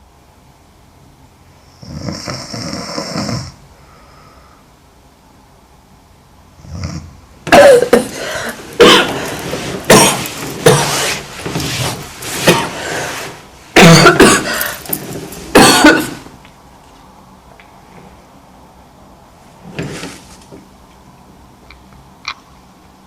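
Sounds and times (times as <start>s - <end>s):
woman coughing: 7.5s - 11.2s, 12.4s - 12.8s, 13.8s - 14.9s, 15.5s - 16.3s.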